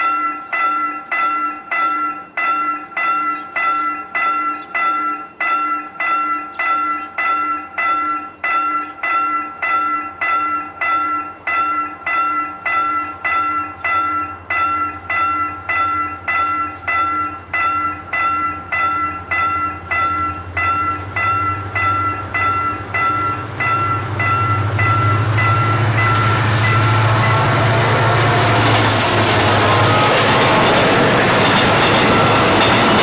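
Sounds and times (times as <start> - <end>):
level crossing bell ringing: 0.0 - 26.3
train rumble and wheel noise: 7.1 - 33.0.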